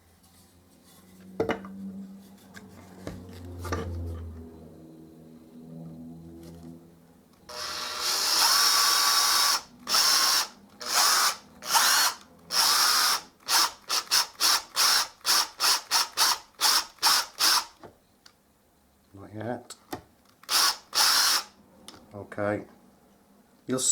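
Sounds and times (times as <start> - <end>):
power drill cutting rivet: 7.5 - 17.8, 20.4 - 21.6.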